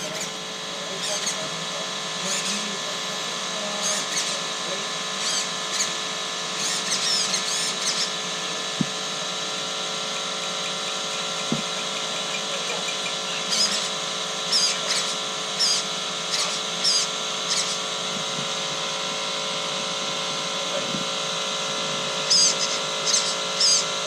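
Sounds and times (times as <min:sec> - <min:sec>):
steady hum: 0:00.0 - 0:24.0
screwdriver squeaking: 0:03.8 - 0:04.4, 0:05.2 - 0:08.3, 0:10.0 - 0:17.9, 0:22.2 - 0:23.9.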